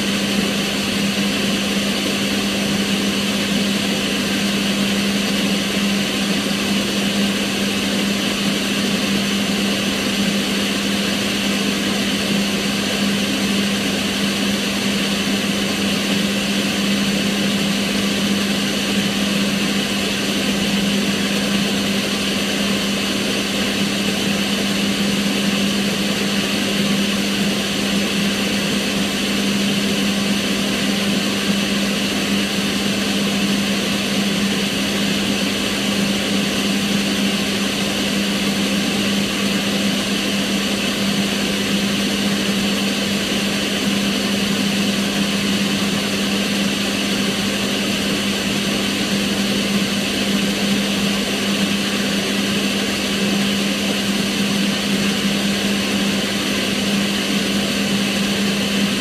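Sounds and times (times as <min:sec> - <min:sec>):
extractor fan running: 0:00.0 - 0:59.0.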